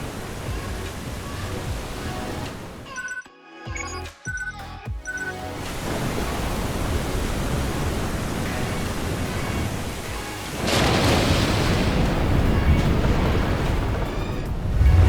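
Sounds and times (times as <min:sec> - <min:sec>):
deep rumble: 0:14.5 - 0:15.0
loud rushing noise: 0:14.5 - 0:15.0.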